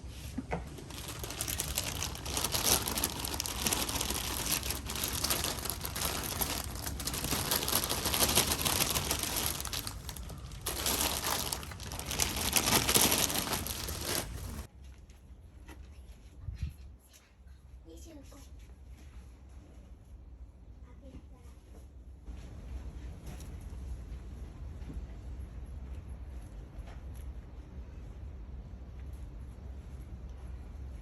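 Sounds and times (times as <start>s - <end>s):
material crinkling and rustling: 0.6s - 14.7s.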